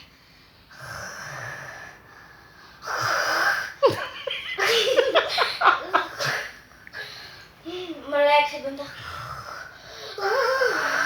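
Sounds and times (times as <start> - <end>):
child imitating snoring: 2.8 - 3.8, 8.9 - 11.0
child laughing: 3.8 - 6.3.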